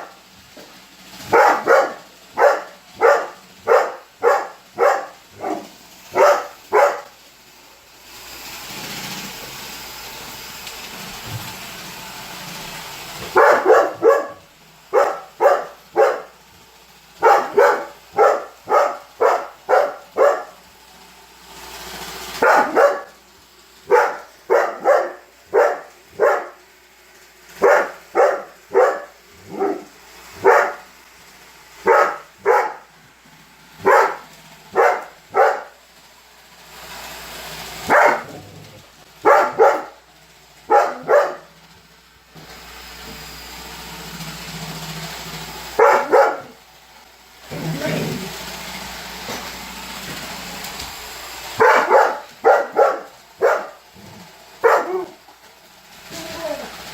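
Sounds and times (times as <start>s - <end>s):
robot vacuum running: 0.0s - 56.9s
dog barking: 1.3s - 7.1s, 13.3s - 16.3s, 17.2s - 20.6s, 22.4s - 23.1s, 23.9s - 26.6s, 27.6s - 30.8s, 31.8s - 32.9s, 33.8s - 35.8s, 37.9s - 38.5s, 39.2s - 40.0s, 40.7s - 41.5s, 45.8s - 46.6s, 51.6s - 53.8s, 54.6s - 55.2s.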